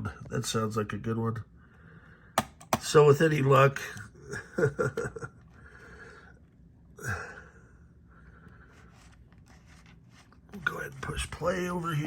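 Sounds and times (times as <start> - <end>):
faint steady low hum: 0.0 - 12.0
soft breathing: 1.5 - 2.4, 5.5 - 10.4.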